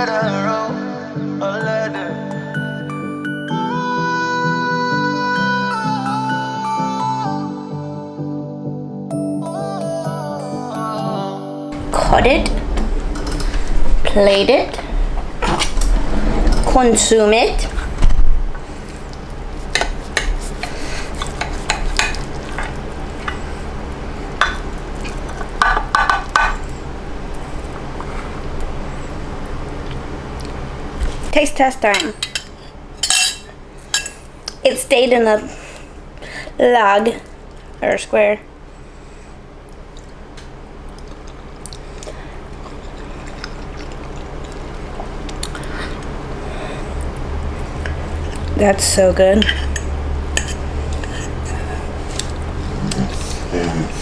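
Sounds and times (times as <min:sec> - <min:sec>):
person chewing food: 0:18.8 - 0:25.8, 0:39.6 - 0:48.6, 0:49.6 - 0:54.0
metal utensil scraping and clinking: 0:31.8 - 0:34.2.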